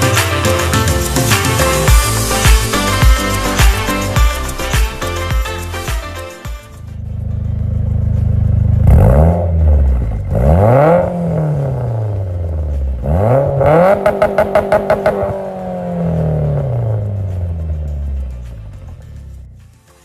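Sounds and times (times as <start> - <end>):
car engine revving: 0.0 - 19.6.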